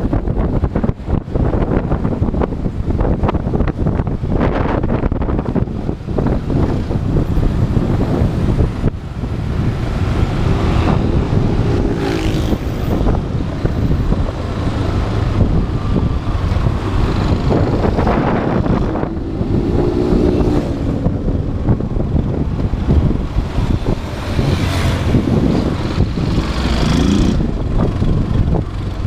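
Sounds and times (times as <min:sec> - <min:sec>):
wind buffeting microphone: 0:00.0 - 0:29.0
motorcycle engine running: 0:06.0 - 0:29.0.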